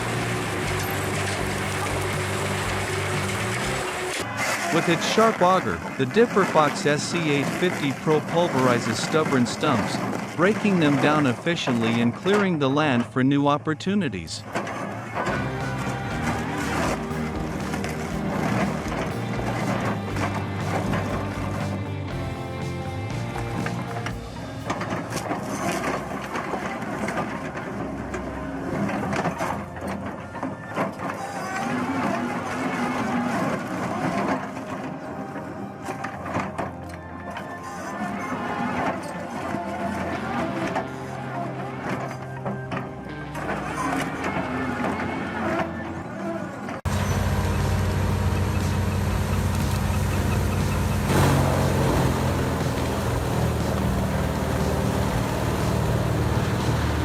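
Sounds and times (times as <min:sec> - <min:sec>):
heavy machine engine running: 0:00.0 - 0:04.3, 0:15.2 - 0:30.4, 0:46.9 - 0:57.0
auger grinding through stump: 0:00.0 - 0:04.8, 0:15.3 - 0:22.4, 0:46.9 - 0:57.0
low machine hum: 0:46.9 - 0:57.0
wood cracking and splintering: 0:48.4 - 0:57.0.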